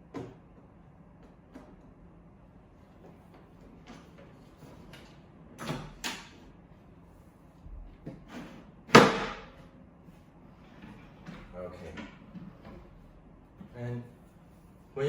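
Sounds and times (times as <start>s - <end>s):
sharp loud knock: 8.9s - 9.5s.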